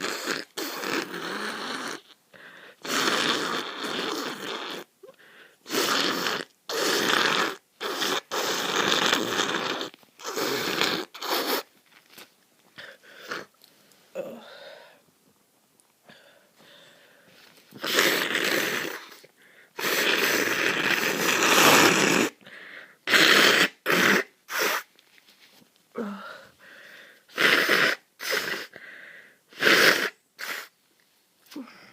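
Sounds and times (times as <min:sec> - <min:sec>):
person blowing nose: 0:00.0 - 0:02.2, 0:02.8 - 0:11.7, 0:12.8 - 0:13.6, 0:17.4 - 0:22.4, 0:23.0 - 0:25.0, 0:27.3 - 0:28.8, 0:29.5 - 0:30.8
short sniffs: 0:05.6 - 0:11.7, 0:23.1 - 0:24.9, 0:26.8 - 0:30.8.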